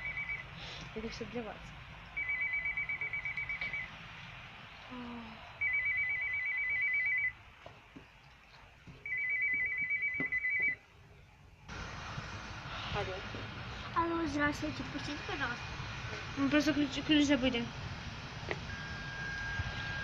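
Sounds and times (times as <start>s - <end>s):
intercom warbling beep: 2.2s - 3.9s.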